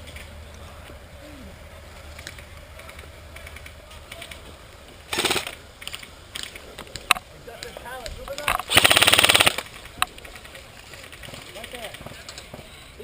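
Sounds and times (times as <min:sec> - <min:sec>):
airsoft gun rapid burst: 0:05.1 - 0:05.6, 0:08.7 - 0:09.7.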